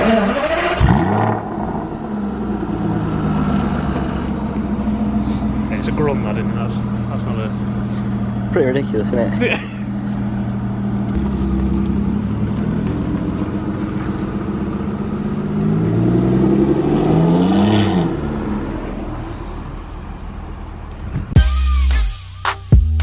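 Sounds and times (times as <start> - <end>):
car engine idling and revving: 0.0 - 23.0.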